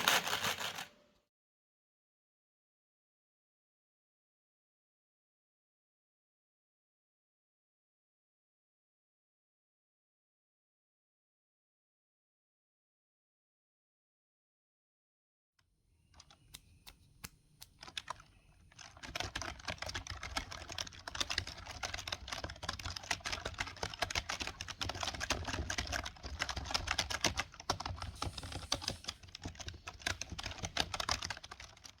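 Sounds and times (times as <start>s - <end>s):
keyboard typing: 16.2s - 32.0s.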